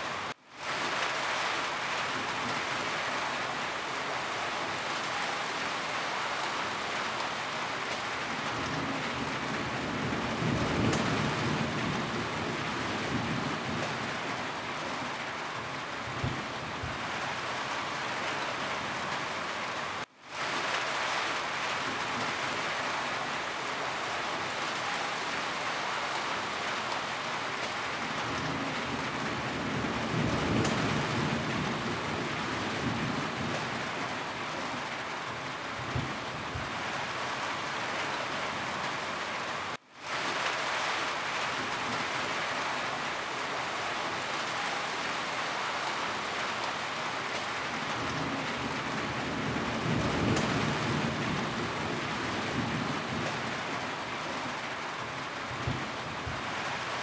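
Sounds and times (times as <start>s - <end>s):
rain falling on a roof: 0.0s - 57.0s.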